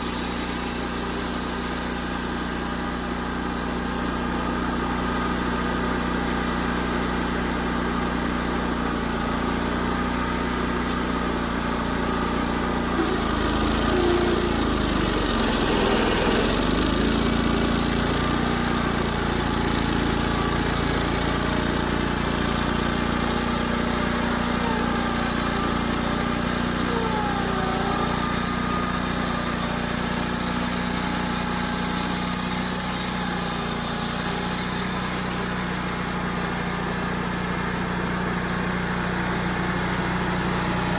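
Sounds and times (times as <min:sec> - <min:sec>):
saw blade hissing through log: 0:00.0 - 0:04.2, 0:12.8 - 0:38.0
sawmill engine running: 0:00.0 - 0:40.9.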